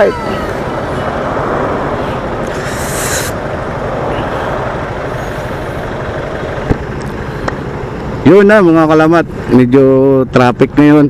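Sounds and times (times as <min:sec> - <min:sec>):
motorcycle engine: 0:00.0 - 0:10.2
short sharp hiss: 0:02.5 - 0:03.4.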